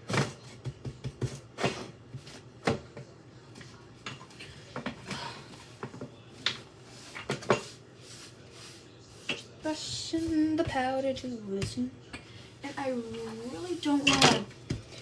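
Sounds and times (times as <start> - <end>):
items knocking on counter: 0.0 - 1.8
powder brushed off counter: 6.8 - 9.6.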